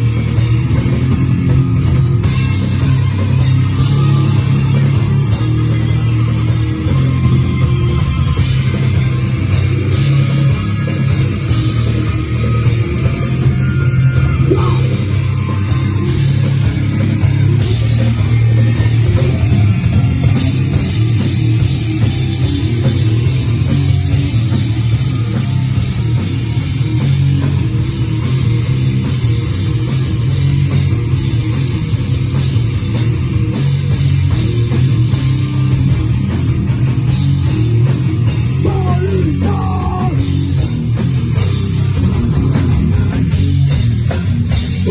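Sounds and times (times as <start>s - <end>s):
distorted electric guitars: 0.0s - 44.9s
drum kit: 0.0s - 44.9s.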